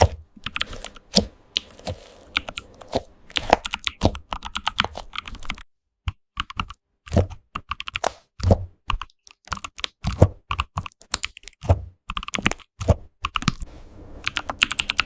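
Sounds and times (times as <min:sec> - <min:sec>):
computer keyboard typing: 0:00.4 - 0:01.0, 0:01.6 - 0:06.8, 0:07.5 - 0:08.1, 0:08.9 - 0:13.6, 0:14.2 - 0:15.0.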